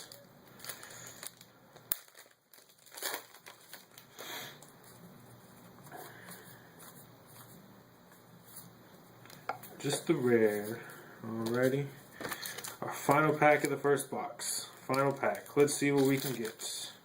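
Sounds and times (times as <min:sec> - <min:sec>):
foil wrapper crinkling and tearing: 0:00.0 - 0:05.1, 0:09.3 - 0:17.0.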